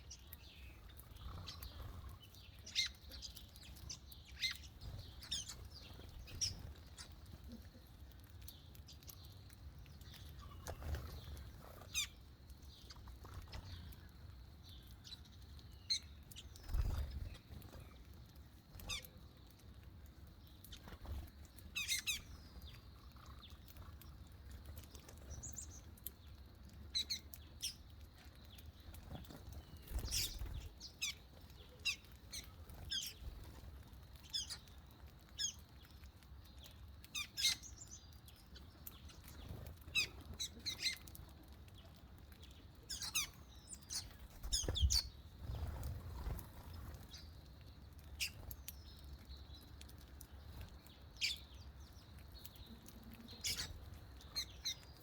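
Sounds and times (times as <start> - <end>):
small birds chirping: 0.0 - 55.0.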